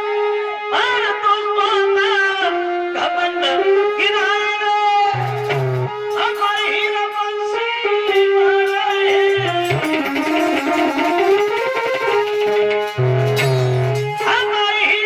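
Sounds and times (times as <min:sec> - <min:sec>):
held drone: 0:05.2 - 0:06.0, 0:09.4 - 0:14.4
reedy wind instrument melody: 0:05.2 - 0:06.8, 0:09.1 - 0:14.6.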